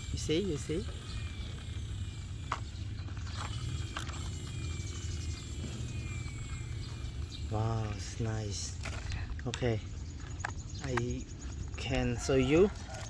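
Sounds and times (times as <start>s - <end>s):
plastic toy ratcheting rattle: 0.0s - 9.2s.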